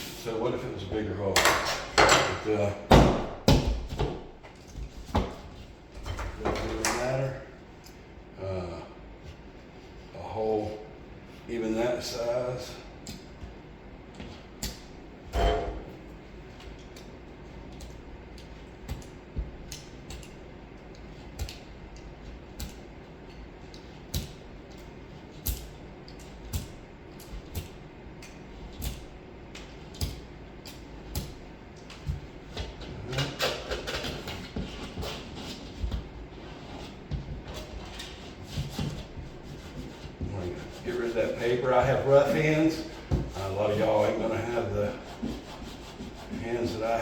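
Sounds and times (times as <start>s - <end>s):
scraping and rubbing on drywall: 32.0s - 47.0s.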